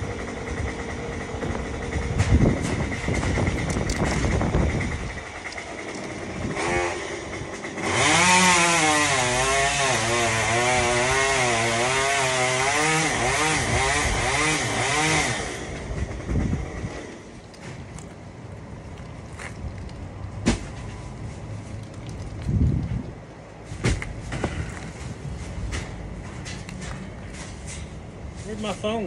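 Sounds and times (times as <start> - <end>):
chainsaw cutting a branch: 0.1 - 18.1.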